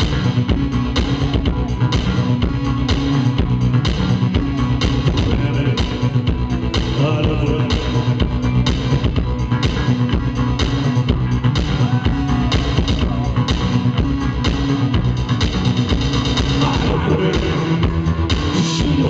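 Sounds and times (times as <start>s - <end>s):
live electronic rock band: 0.0s - 19.0s
person singing: 5.1s - 8.4s, 16.6s - 19.0s.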